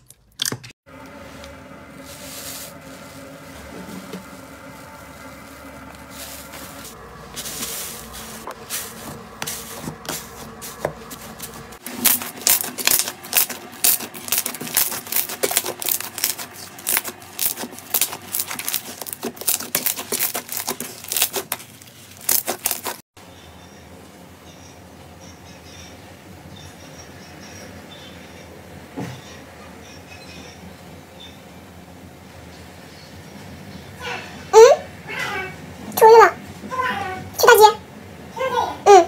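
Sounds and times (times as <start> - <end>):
slime squishing: 4.9 - 23.0
slime crackling and popping: 11.9 - 23.0.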